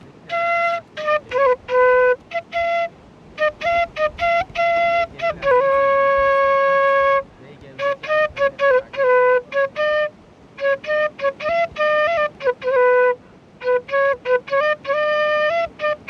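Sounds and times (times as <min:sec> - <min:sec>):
solo instrument melody: 0:00.0 - 0:16.0.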